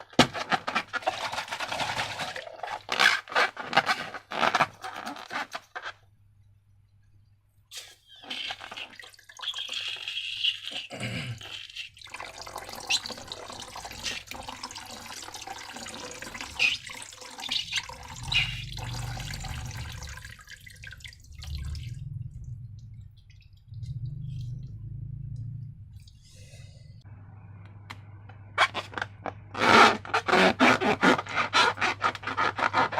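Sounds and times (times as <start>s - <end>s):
slime squelching: 15.9s - 20.4s.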